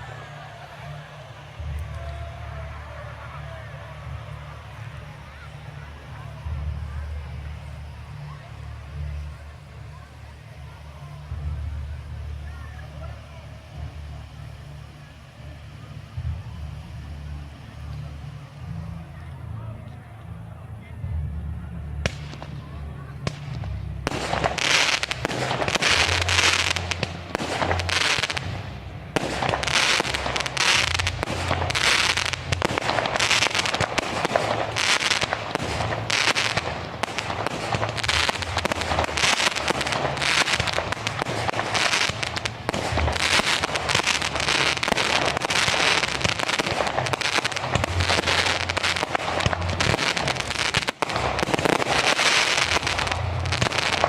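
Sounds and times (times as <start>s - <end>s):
firework shells bursting with crackling: 22.0s - 54.0s.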